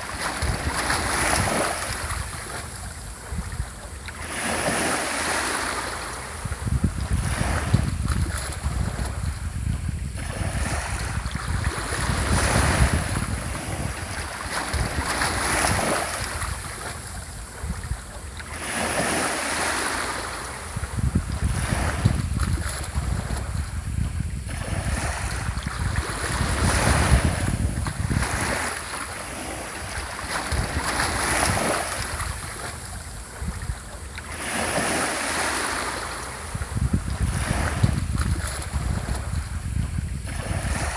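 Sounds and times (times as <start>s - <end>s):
small waves washing onto shore: 0.0s - 40.9s
wind rumble on microphone: 0.0s - 40.9s.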